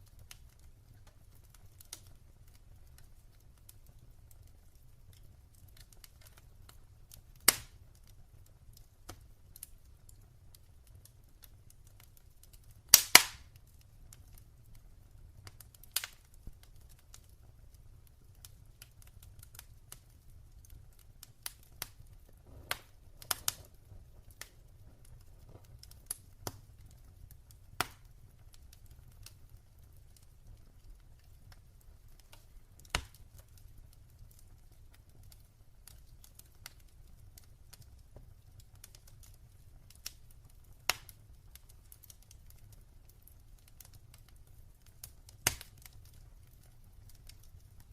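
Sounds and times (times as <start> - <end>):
fire popping: 0.0 - 47.9
wood fire crackling: 0.0 - 47.9.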